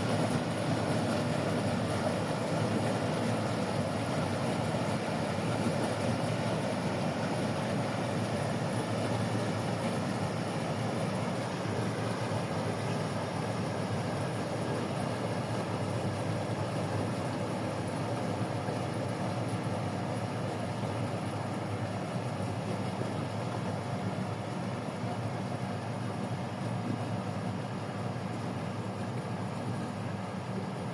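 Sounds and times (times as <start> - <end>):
harvesting machine engine running: 0.0 - 18.9.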